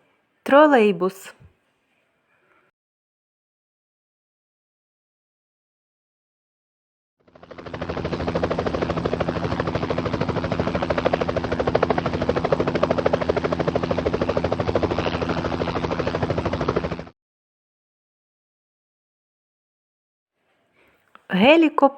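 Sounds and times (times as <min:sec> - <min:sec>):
helicopter engine tone: 0:07.2 - 0:17.1
helicopter rotor blades chopping: 0:07.2 - 0:17.2.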